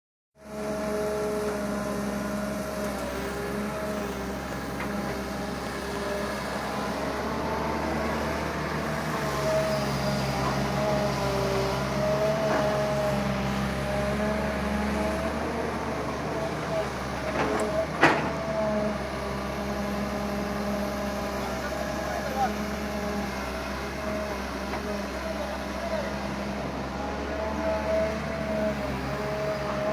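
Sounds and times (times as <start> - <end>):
excavator diesel engine running: 0.4 - 29.9.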